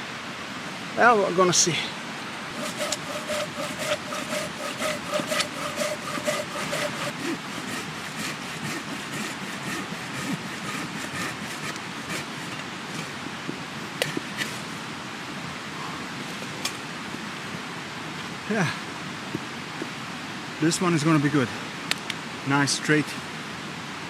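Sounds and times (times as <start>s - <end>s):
hand saw cutting log: 2.5s - 12.7s, 14.0s - 14.7s.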